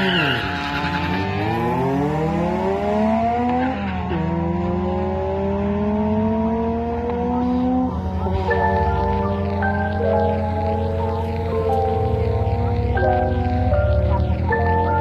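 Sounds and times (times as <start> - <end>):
car engine accelerating: 0.0 - 15.0
music: 8.1 - 15.0.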